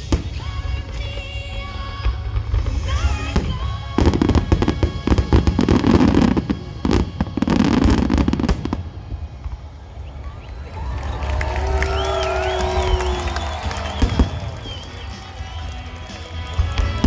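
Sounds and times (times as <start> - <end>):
music through loudspeakers: 0.0 - 8.8, 12.0 - 17.0
fireworks bangs and crackles: 0.0 - 17.0.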